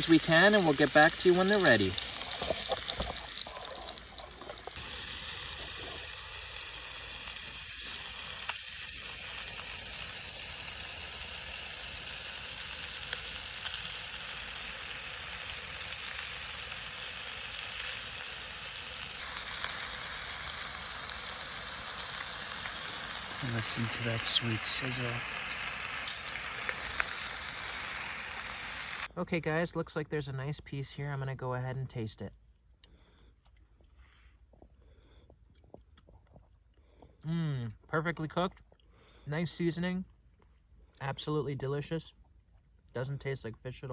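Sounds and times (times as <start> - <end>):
fish sizzling in a pan: 0.0 - 29.1.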